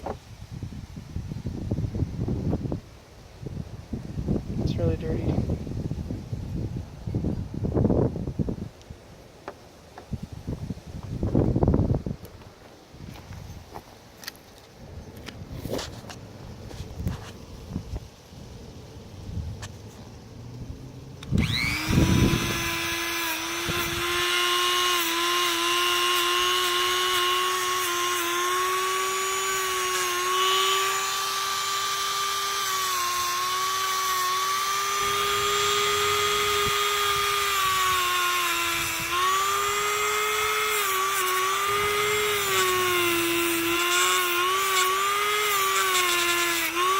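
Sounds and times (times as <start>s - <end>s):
car engine starting and whining: 18.6s - 25.0s.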